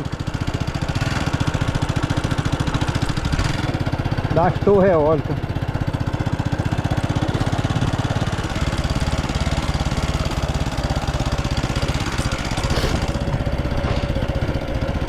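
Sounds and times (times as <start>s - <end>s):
motorcycle engine putter: 5.5s - 15.0s.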